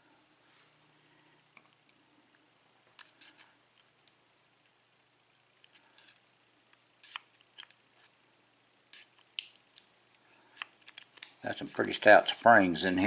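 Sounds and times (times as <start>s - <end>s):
small metallic clicks and taps: 10.6s - 12.2s.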